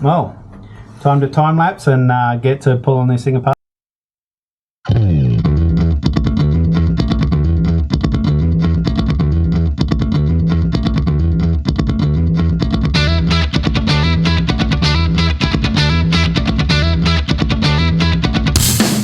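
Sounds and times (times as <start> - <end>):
guitar and bass music with beat: 4.9 - 19.0.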